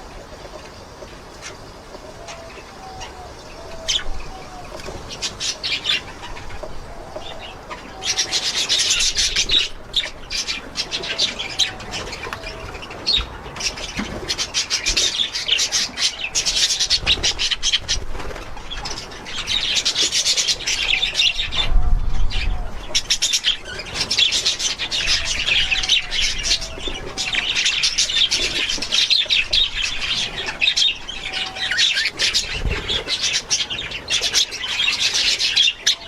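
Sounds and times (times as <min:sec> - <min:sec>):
budgerigars chattering: 0:01.4 - 0:21.7, 0:22.3 - 0:36.0.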